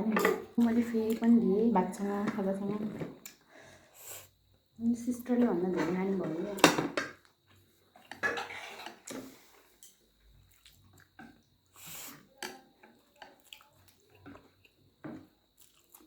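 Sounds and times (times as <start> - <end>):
chewing and smacking: 10.3 - 11.5, 12.8 - 16.0.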